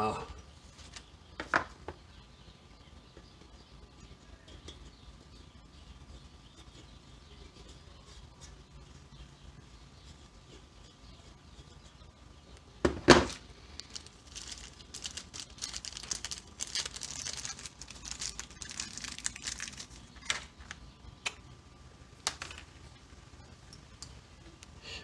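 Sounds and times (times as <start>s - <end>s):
crinkling rustle: 13.2s - 20.8s.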